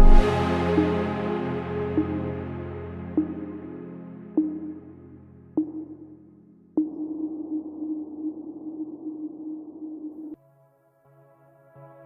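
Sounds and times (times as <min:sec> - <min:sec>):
held synth tone: 0:00.0 - 0:03.6.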